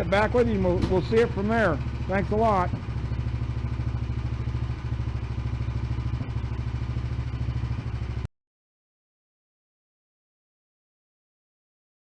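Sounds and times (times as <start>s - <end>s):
small engine idling: 0.0s - 8.3s.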